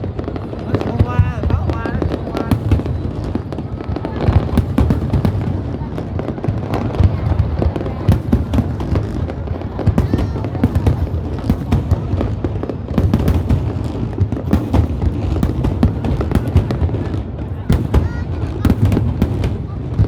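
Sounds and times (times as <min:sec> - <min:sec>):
fireworks thuds and cracks: 0:04.5 - 0:05.6, 0:07.0 - 0:20.0.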